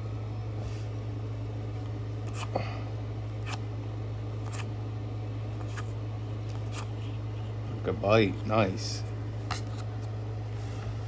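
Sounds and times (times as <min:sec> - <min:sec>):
low electrical hum: 0:00.0 - 0:11.0
trading cards flipping: 0:09.4 - 0:10.2.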